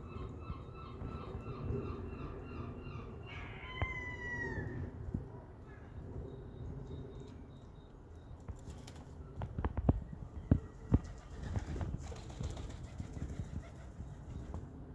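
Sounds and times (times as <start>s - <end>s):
seagull wing flaps: 10.9s - 14.5s.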